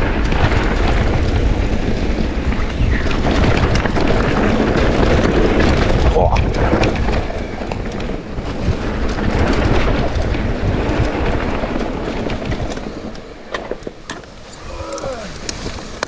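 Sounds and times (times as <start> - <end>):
bike rattling with clicks: 0.0 - 16.0
tyres rumbling over rough ground: 0.0 - 16.0
wind on microphone: 0.0 - 16.0.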